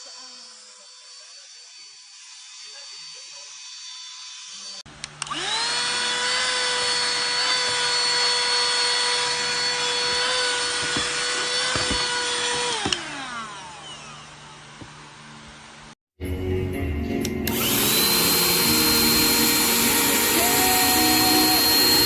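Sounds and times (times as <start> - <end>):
vacuum motor whine: 4.6 - 15.9, 17.4 - 22.0.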